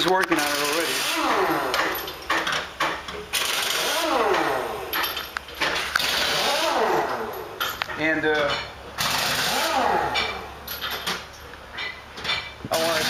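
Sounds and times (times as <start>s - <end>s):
air impact wrench: 0.4s - 7.6s, 9.0s - 11.1s, 12.7s - 13.0s.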